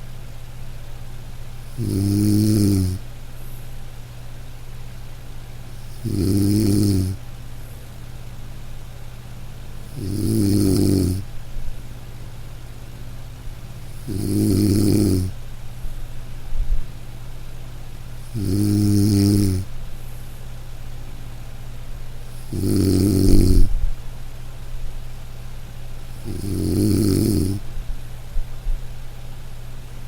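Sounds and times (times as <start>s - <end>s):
person snoring loudly: 1.7s - 3.0s, 5.8s - 7.2s, 9.9s - 11.2s, 14.0s - 15.3s, 18.3s - 19.7s, 22.3s - 23.8s, 26.2s - 27.6s
quiet breathing: 5.7s - 7.7s, 22.2s - 23.8s, 26.1s - 27.7s.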